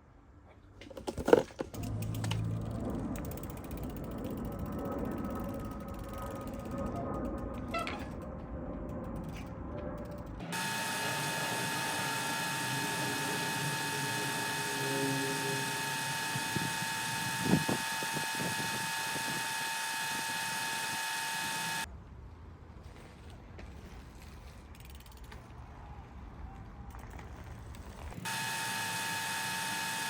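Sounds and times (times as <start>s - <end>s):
bike freehub ratcheting: 1.8s - 8.3s, 24.7s - 25.4s
steady hum with high tones: 9.2s - 21.9s, 28.3s - 30.0s.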